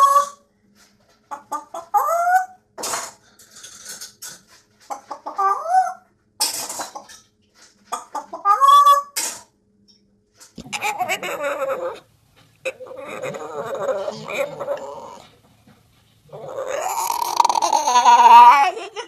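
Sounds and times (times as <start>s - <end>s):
chicken clucking: 0.0s - 0.4s, 1.2s - 2.6s, 4.8s - 6.1s, 7.8s - 9.2s, 10.6s - 15.4s, 16.3s - 19.0s.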